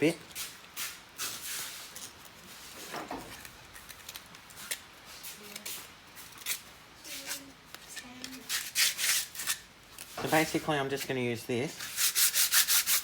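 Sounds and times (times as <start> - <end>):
hand sanding strokes: 8.4 - 9.6, 11.7 - 13.0.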